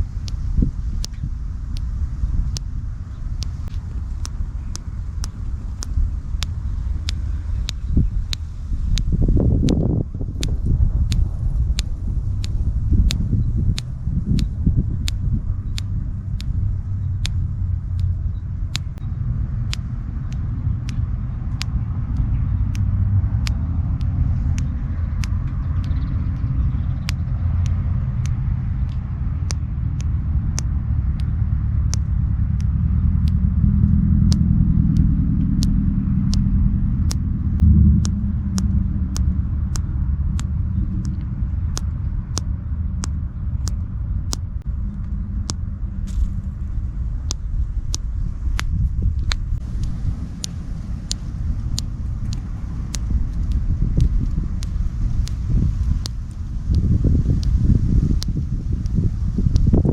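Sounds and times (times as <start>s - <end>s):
low rumble: 0.0s - 59.9s
sharp clicks: 0.0s - 59.9s.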